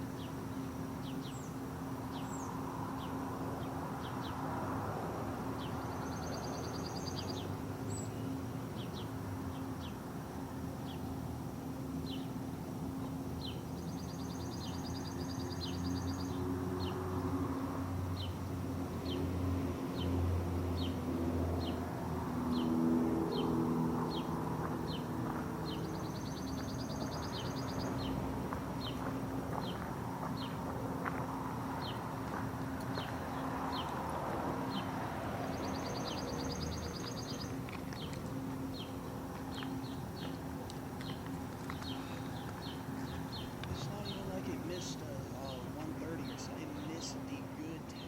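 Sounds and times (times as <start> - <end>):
bird chirping: 0.0 - 4.4, 5.6 - 10.0, 12.0 - 17.0, 24.9 - 28.2, 34.7 - 48.0
steady low hum: 0.0 - 48.0.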